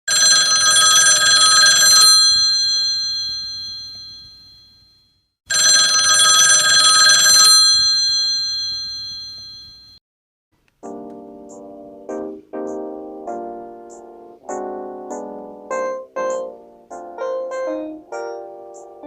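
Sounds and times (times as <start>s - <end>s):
telephone bell ringing: 0.1s - 10.0s.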